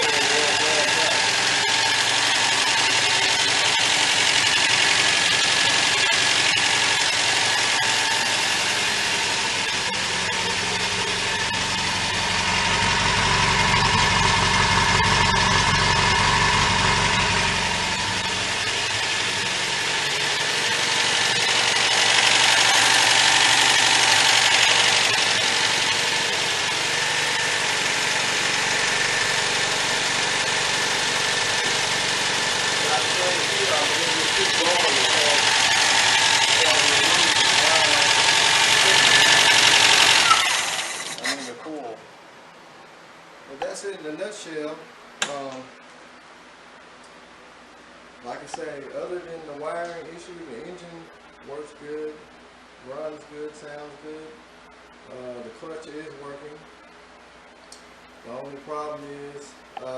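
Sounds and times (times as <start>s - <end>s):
car engine running: 0.0s - 41.4s.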